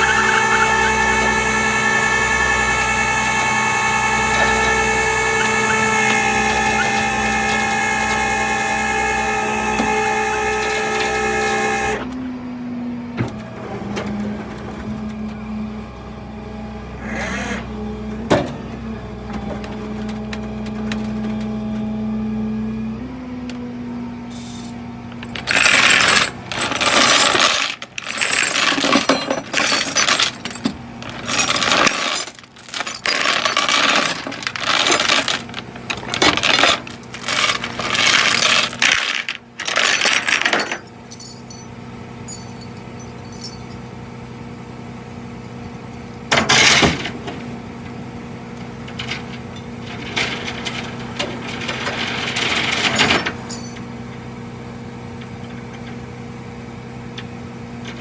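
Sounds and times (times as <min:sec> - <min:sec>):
loud metallic clattering: 0:25.2 - 0:41.7, 0:42.3 - 0:43.8, 0:50.0 - 0:53.8.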